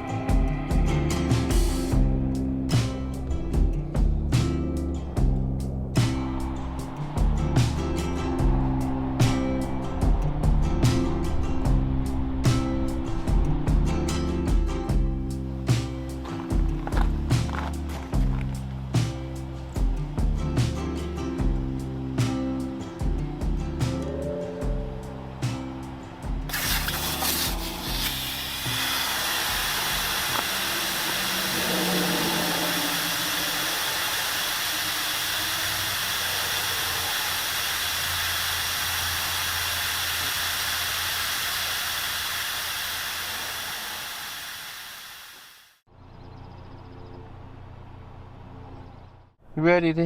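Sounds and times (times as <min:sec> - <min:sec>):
steady rushing noise: 0:05.7 - 0:14.8, 0:26.3 - 0:45.8.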